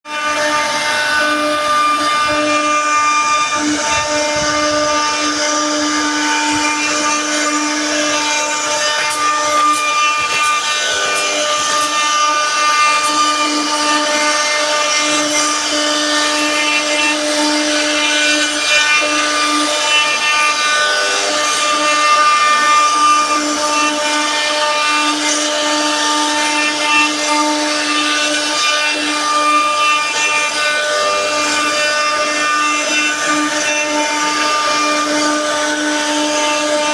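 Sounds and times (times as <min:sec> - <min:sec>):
bit rasping into wood: 0:00.1 - 0:36.9
router spindle whine: 0:00.1 - 0:36.9.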